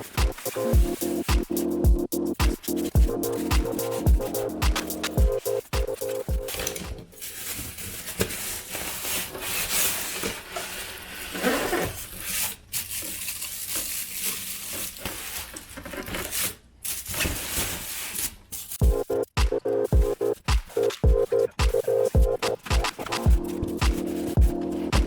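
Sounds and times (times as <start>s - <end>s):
packaging rustling and crinkling: 6.2s - 18.8s.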